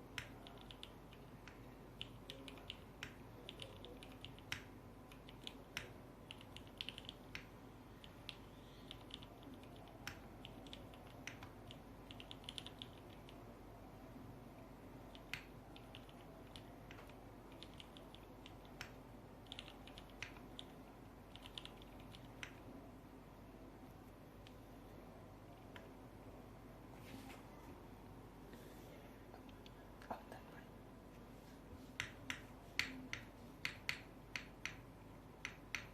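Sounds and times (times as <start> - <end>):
mechanical keyboard typing: 0.0 - 13.4, 15.0 - 22.6.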